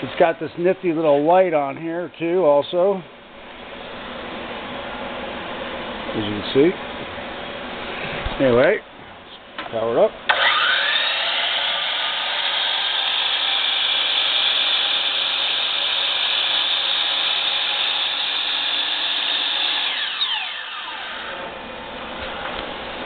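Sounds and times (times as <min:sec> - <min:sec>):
miter saw blade whine: 0:10.3 - 0:21.6.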